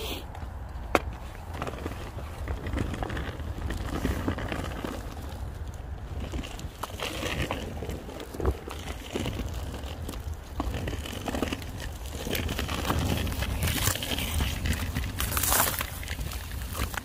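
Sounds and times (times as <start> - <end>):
wind rumble on microphone: 0.0 - 17.0
crunching and crinkling: 0.3 - 17.0.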